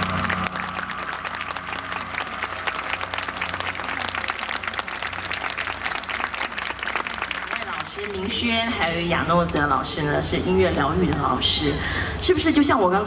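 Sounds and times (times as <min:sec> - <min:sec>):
audience applauding: 0:00.0 - 0:09.7.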